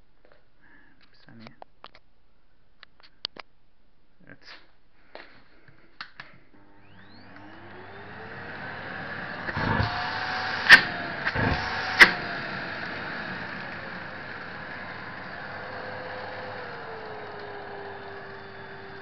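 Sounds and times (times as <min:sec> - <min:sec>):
vacuum cleaner motor whine: 0:06.5 - 0:19.0.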